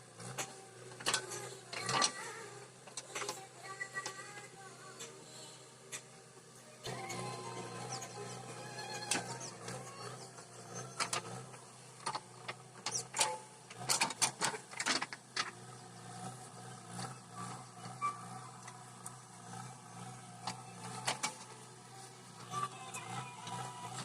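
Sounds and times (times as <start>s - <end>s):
diesel engine droning: 0.0s - 24.0s.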